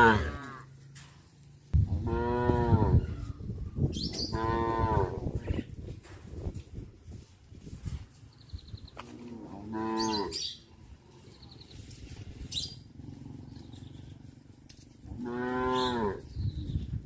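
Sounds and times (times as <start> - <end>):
cow mooing: 0.0 - 0.7, 2.0 - 3.1, 4.3 - 5.3, 9.1 - 10.5, 15.1 - 16.3.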